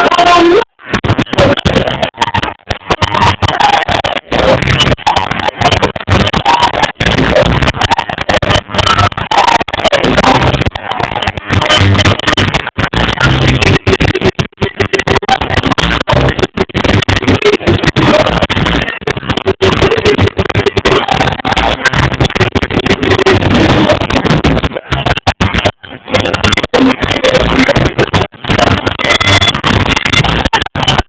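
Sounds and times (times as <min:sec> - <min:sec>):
distorted live reggae band: 0:00.0 - 0:31.0.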